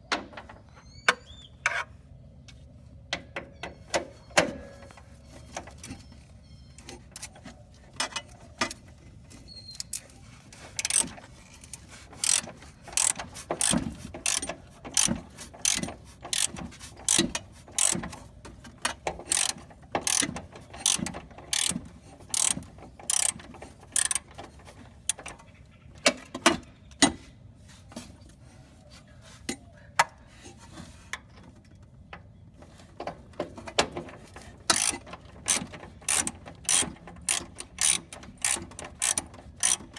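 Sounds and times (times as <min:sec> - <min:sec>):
hand ratchet clicking: 0:10.8 - 0:18.1, 0:19.2 - 0:24.3, 0:34.7 - 0:39.9.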